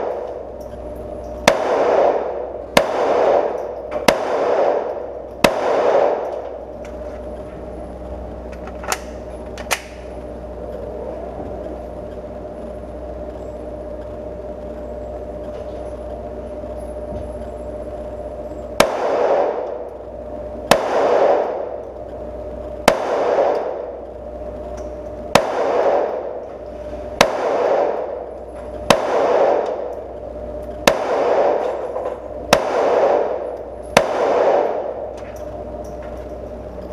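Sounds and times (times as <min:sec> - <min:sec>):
steady background hum: 0:00.0 - 0:36.9
pistol shots with echo: 0:01.4 - 0:06.6, 0:18.8 - 0:19.8, 0:20.7 - 0:21.8, 0:22.8 - 0:24.0, 0:25.3 - 0:26.4, 0:27.2 - 0:30.0, 0:30.8 - 0:35.2.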